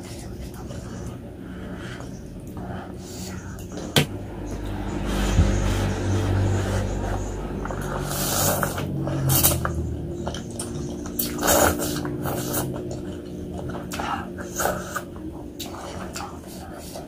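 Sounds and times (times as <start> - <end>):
person chewing food: 7.7 - 17.0.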